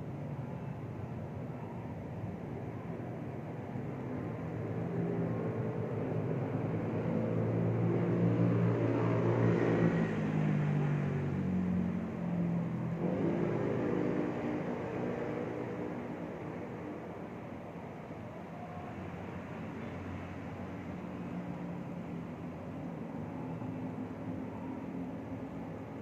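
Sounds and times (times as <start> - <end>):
vehicle engine passing: 12.8 - 16.8.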